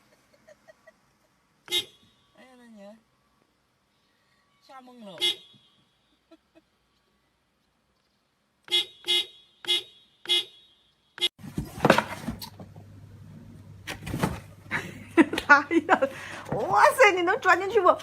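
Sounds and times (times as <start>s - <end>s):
horn tooting: 1.6s - 2.4s
rustling: 11.4s - 12.8s.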